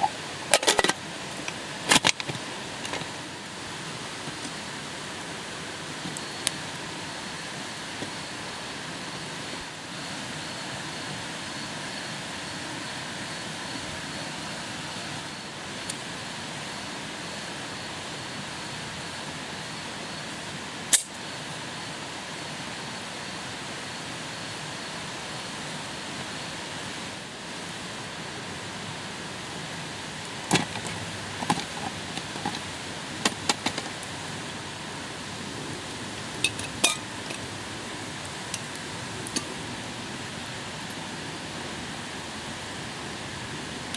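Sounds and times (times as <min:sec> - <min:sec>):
steady outdoor hiss: 0:00.0 - 0:43.9
metal cookware clinking: 0:36.4 - 0:37.4.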